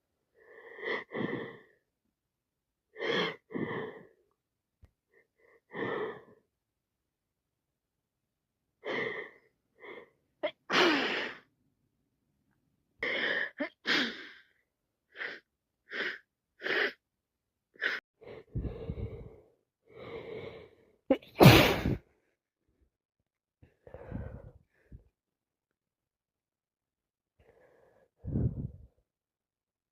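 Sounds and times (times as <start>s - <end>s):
gasping in-breaths: 17.8s - 20.9s, 23.6s - 25.1s
woman sneezing: 21.1s - 22.0s.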